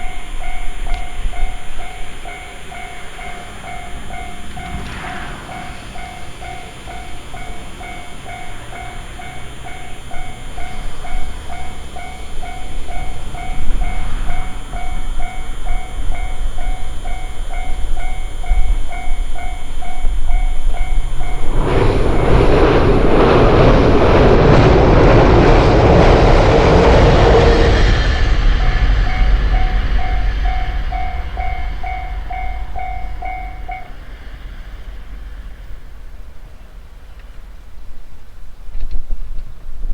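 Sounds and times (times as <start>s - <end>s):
level-crossing bell ringing: 0.0s - 23.4s, 28.2s - 35.8s
electric train passing: 0.0s - 39.9s
train wheels clattering on rails: 0.0s - 39.9s.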